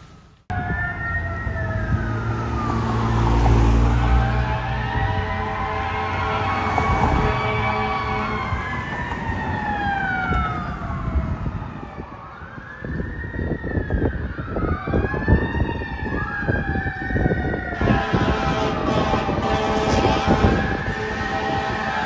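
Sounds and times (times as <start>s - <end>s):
fire engine siren wailing: 0.5s - 22.0s
truck air horn blasts: 3.8s - 9.0s, 17.8s - 22.0s.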